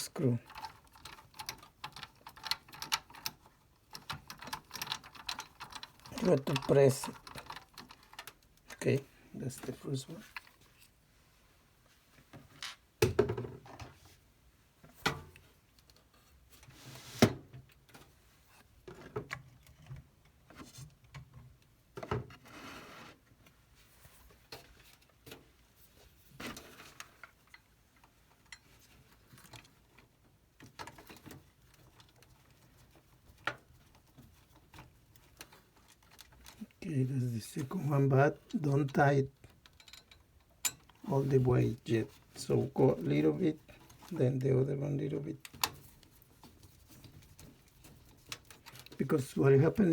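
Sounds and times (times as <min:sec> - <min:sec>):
screwdriver and metal parts knocking: 0:00.4 - 0:08.7.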